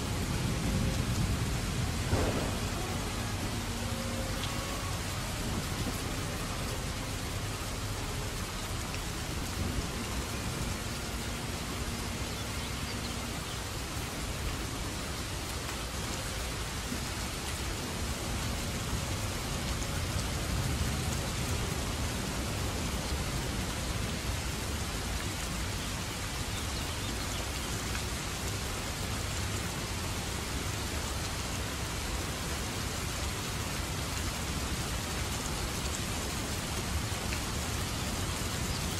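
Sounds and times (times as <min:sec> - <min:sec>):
dense rain falling: 0:00.0 - 0:38.9
low rumble: 0:00.1 - 0:07.7.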